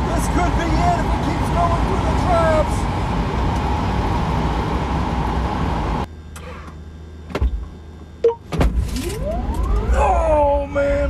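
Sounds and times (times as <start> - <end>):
whine rising in pitch: 8.2 - 11.0.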